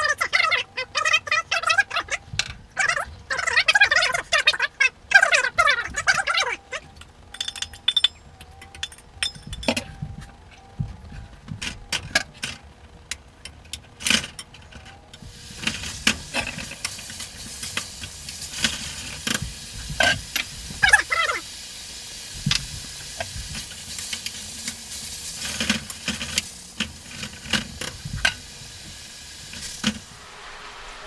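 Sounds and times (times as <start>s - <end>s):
food sizzling in a pan: 15.2s - 31.0s.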